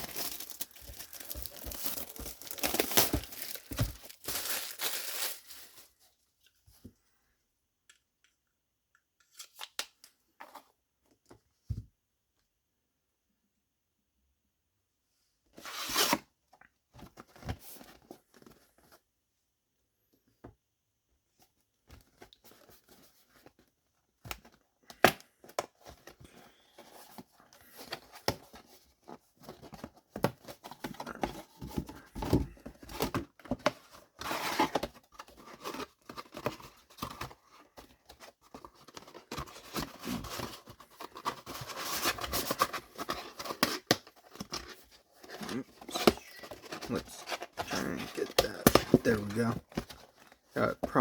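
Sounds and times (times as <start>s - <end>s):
cardboard packaging tearing: 0.0s - 5.8s, 39.0s - 50.2s
packaging rustling: 0.0s - 5.9s, 29.4s - 51.0s.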